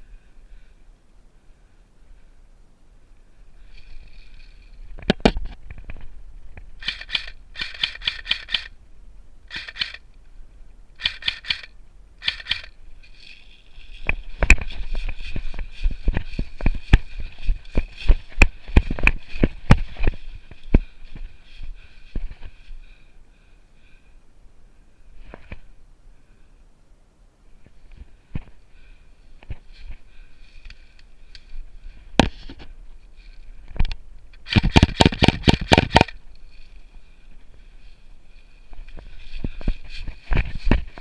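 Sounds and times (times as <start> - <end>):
sharp clicks and cracks: 4.6 - 8.8, 9.5 - 10.1, 11.0 - 15.2, 33.7 - 36.3
airsoft guns firing bursts: 6.8 - 8.7, 9.5 - 10.0, 11.0 - 12.8, 34.4 - 36.2.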